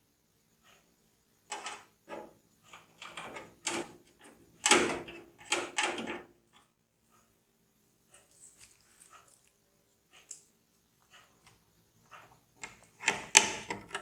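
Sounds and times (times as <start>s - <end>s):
knocks clatters and scrapes: 1.5s - 4.4s.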